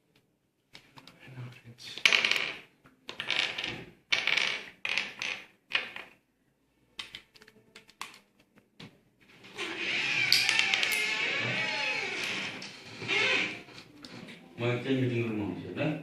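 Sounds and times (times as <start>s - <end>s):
plastic puzzle pieces clicking: 2.0s - 6.2s, 7.0s - 8.6s.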